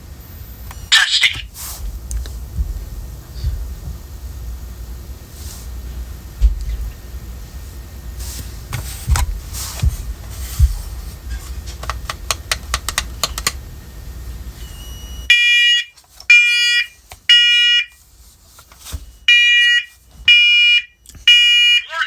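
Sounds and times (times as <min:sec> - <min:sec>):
alarm horn beeps: 0:14.6 - 0:18.0, 0:19.1 - 0:22.0.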